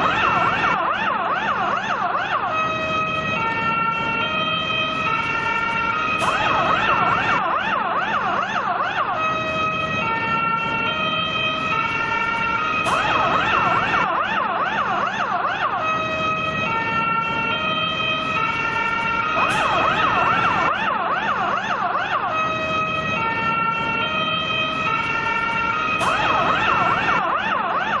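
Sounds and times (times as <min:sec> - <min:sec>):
fire engine siren: 0:00.0 - 0:28.0
siren click: 0:12.8 - 0:14.1, 0:19.4 - 0:20.7, 0:26.0 - 0:28.0.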